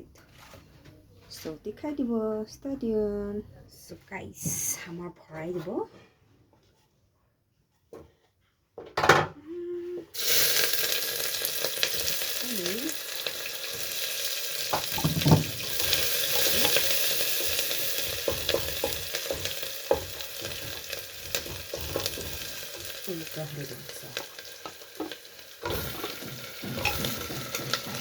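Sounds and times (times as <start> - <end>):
hot oil sizzling in pan: 10.2 - 28.0
utensil clinking and scraping: 25.0 - 28.0.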